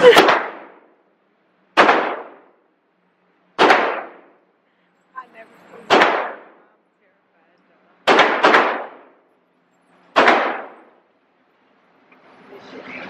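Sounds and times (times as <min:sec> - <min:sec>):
gunshots with echo: 0:01.8 - 0:02.5, 0:03.6 - 0:04.3, 0:05.9 - 0:06.6, 0:08.0 - 0:09.2, 0:10.1 - 0:11.0.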